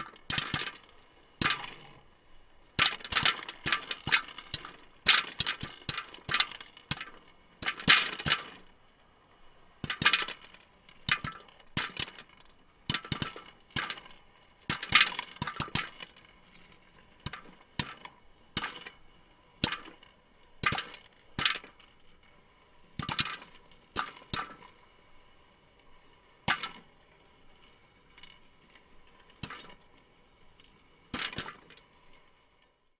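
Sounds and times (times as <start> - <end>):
popcorn popping: 0.0 - 2.0, 2.8 - 8.7, 9.8 - 16.2, 17.2 - 19.0, 19.6 - 20.0, 20.6 - 21.9, 23.0 - 24.6, 26.5 - 26.8, 29.4 - 29.8, 31.1 - 31.8
faint steady hum: 0.0 - 32.9.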